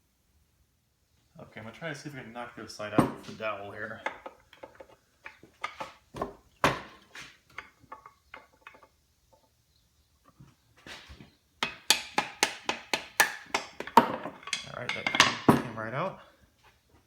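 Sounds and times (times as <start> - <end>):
mallet knocking on wooden dowel: 11.6 - 14.3.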